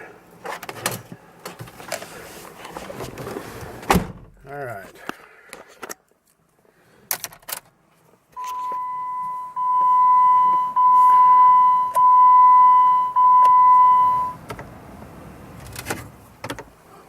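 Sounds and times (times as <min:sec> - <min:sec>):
dashboard warning chime beeping: 0:08.4 - 0:14.4.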